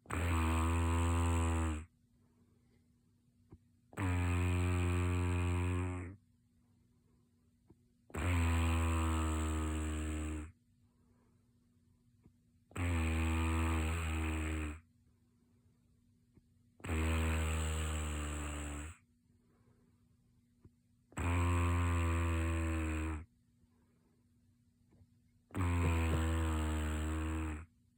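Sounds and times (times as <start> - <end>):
person snoring: 0.0 - 1.9, 3.9 - 6.2, 8.1 - 10.6, 12.7 - 14.8, 16.8 - 19.0, 21.1 - 23.3, 25.5 - 27.7.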